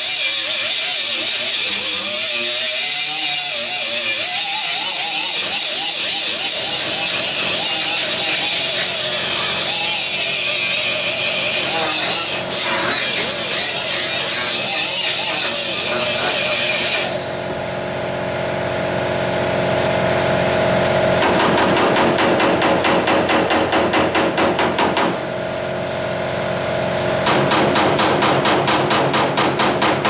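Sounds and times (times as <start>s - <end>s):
angle grinder cutting metal: 0.0s - 17.5s
hammer blows on sheet metal: 27.2s - 30.0s.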